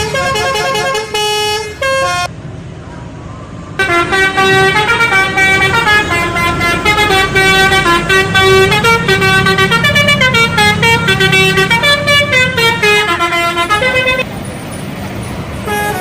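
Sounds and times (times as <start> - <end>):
bus horn playing tune: 0.0 - 2.3, 3.8 - 14.3, 15.6 - 16.0.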